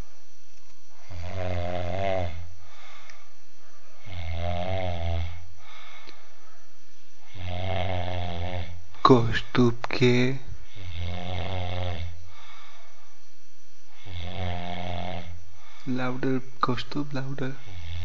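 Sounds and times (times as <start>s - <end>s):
man snoring: 1.0s - 2.5s, 4.0s - 5.9s, 7.2s - 12.9s, 13.9s - 15.4s, 17.4s - 18.0s.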